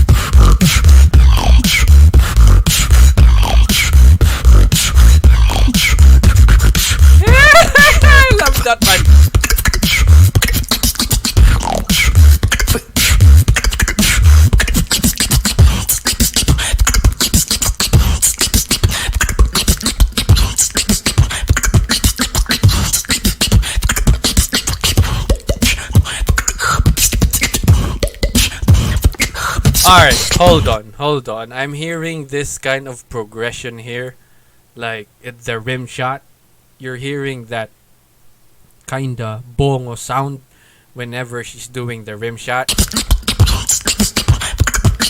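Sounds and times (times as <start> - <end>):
person beatboxing: 0.0 - 30.8, 42.6 - 45.0.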